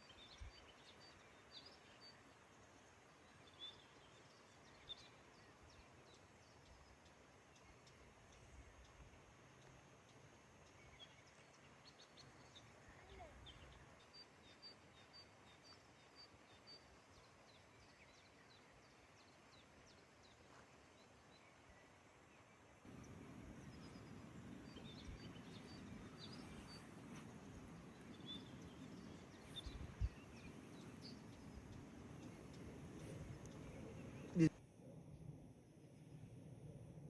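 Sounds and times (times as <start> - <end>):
small birds chirping: 22.9 - 34.5
low even rushing noise: 22.9 - 35.5.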